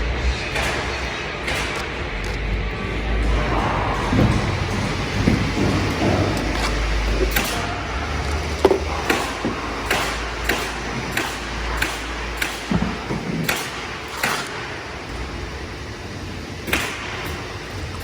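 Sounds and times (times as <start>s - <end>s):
hammer driving nails: 0.2s - 18.0s.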